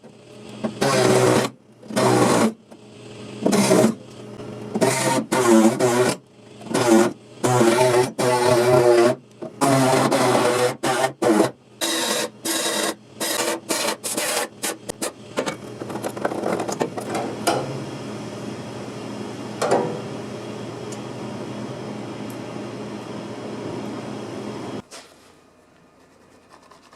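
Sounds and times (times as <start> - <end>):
small electric power tool: 0.6 - 2.6, 3.4 - 4.0, 4.8 - 15.1.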